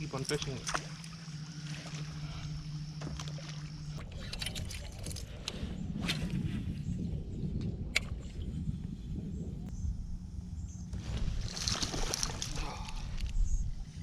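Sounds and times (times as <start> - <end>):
water sloshing around kayak: 0.0 - 6.8, 11.0 - 14.0
steady low hum: 0.0 - 14.0
clicks and knocks of gear: 4.0 - 5.6.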